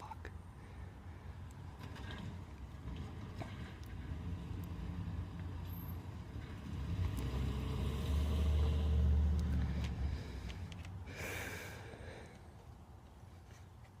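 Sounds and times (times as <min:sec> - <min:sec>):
truck engine rumbling: 0:00.0 - 0:14.0.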